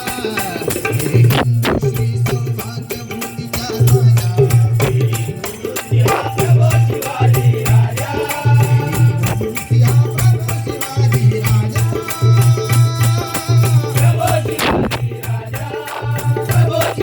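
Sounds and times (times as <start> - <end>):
jingling percussion: 0.0 - 17.0
deep drumming: 1.3 - 2.8, 14.1 - 16.8.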